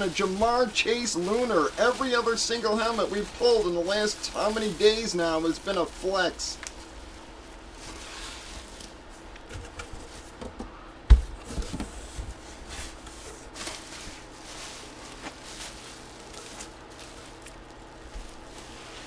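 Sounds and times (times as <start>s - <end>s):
rustling on tabletop: 6.8s - 10.5s, 11.5s - 19.0s.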